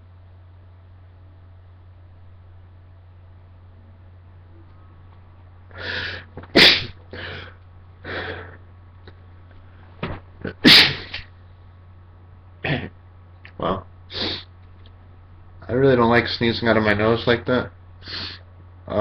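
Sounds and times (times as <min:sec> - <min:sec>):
man sneezing: 0:05.8 - 0:07.5, 0:10.4 - 0:11.3, 0:12.6 - 0:12.9, 0:14.1 - 0:14.5.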